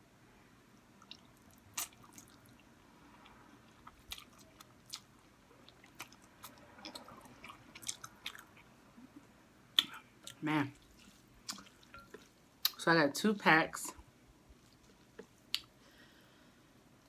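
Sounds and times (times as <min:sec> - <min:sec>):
lip smacks and mouth clicks: 0:01.0 - 0:02.4, 0:09.8 - 0:10.0, 0:15.1 - 0:15.8
wet chewing: 0:01.0 - 0:08.8, 0:09.8 - 0:12.8, 0:14.5 - 0:15.8.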